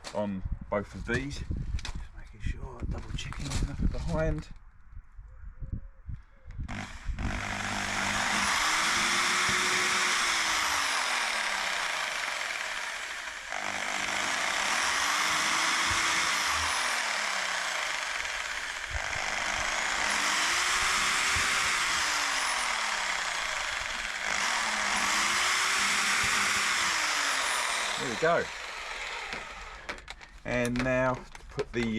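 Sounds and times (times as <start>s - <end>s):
power drill boring holes: 6.7s - 30.3s.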